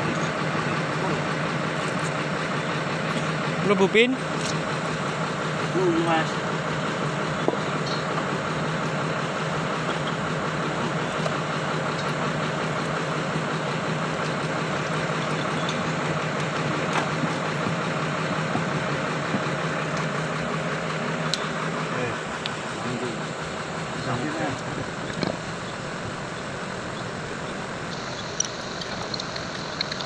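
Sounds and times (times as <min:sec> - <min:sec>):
diesel engine idling: 0:00.0 - 0:30.0
faint clicks: 0:27.9 - 0:30.0.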